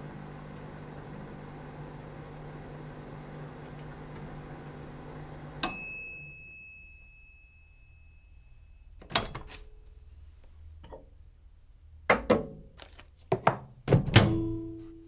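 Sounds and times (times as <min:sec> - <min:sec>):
microwave oven humming: 0:00.0 - 0:09.4
microwave bell ding: 0:05.6 - 0:08.9.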